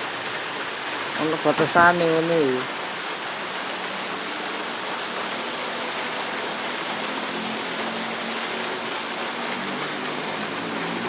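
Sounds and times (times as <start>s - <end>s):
heavy rain: 0.0s - 11.0s.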